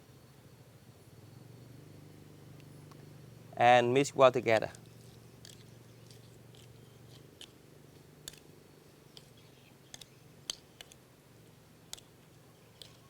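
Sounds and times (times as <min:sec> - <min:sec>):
small clicks: 0:04.6 - 0:08.5, 0:09.1 - 0:11.0, 0:11.9 - 0:12.1, 0:12.7 - 0:13.0.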